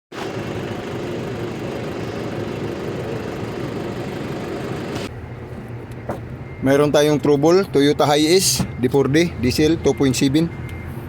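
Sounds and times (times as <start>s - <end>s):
diesel engine idling: 0.1s - 5.6s.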